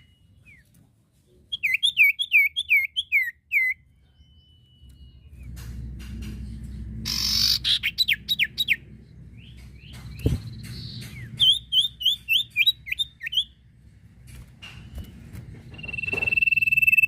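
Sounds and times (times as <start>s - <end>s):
steady low rumble: 4.8s - 17.0s
bird singing whistles: 15.8s - 17.0s.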